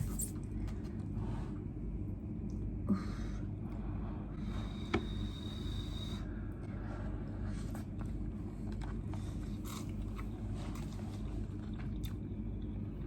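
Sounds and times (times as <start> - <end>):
steady low hum: 0.0 - 13.0
person chewing noodles: 8.8 - 12.4.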